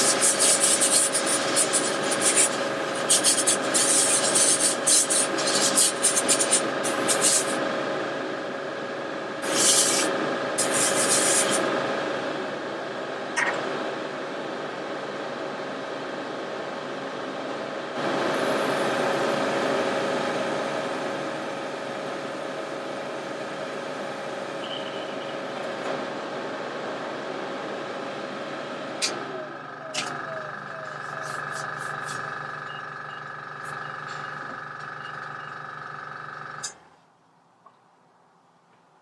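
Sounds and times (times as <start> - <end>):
airbrush spraying hiss: 0.0 - 7.6, 9.4 - 11.6
compressor hum: 0.0 - 36.9.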